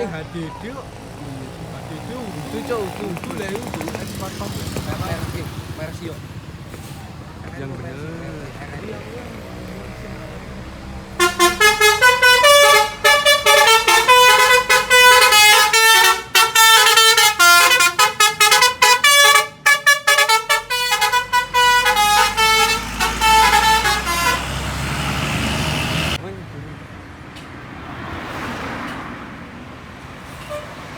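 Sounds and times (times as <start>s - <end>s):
tuned air horns playing jingle: 11.2s - 24.8s.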